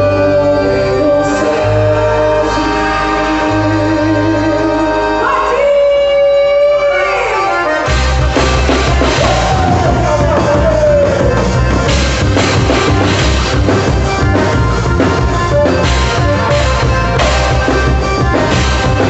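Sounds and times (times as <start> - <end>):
bass and drums: 0.0 - 19.0
loud dance music: 5.2 - 19.0.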